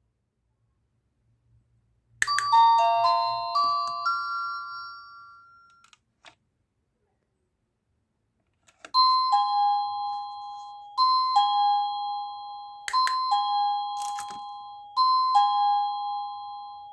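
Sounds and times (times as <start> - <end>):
electronic doorbell ding-dong chime: 2.2 - 5.9, 9.0 - 16.9.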